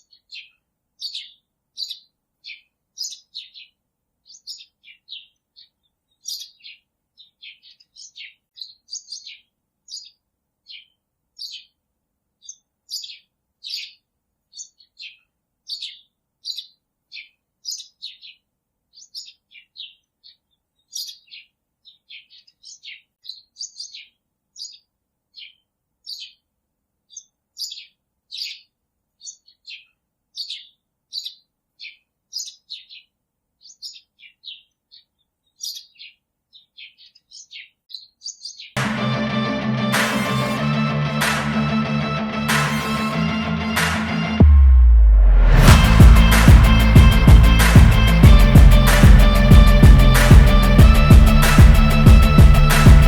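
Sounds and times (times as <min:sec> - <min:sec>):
small birds chirping: 0:00.0 - 0:38.8.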